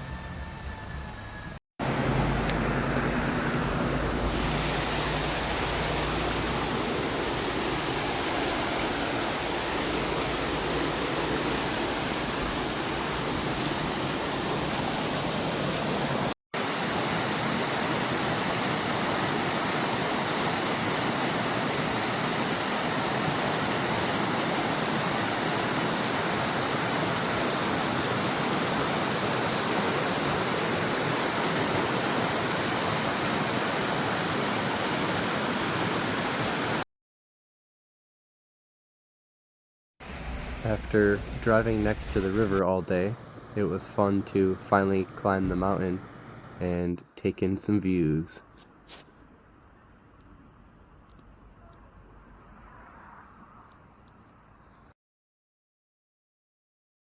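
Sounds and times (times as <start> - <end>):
fast-flowing stream water rushing: 1.8 - 36.8.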